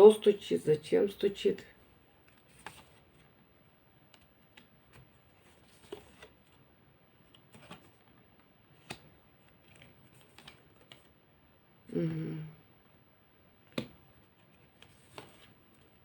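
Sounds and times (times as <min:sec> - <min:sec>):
cards clicking and tapping: 0:08.7 - 0:11.1, 0:13.7 - 0:14.1, 0:14.7 - 0:16.0.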